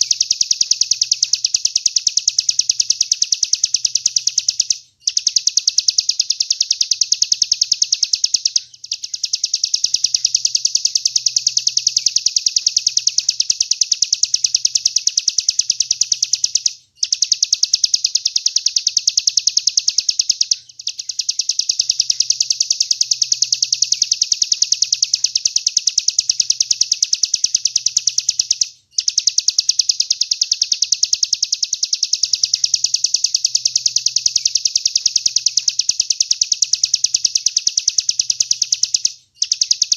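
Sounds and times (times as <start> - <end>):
songbird rapid chattering trill: 0.0 - 39.9.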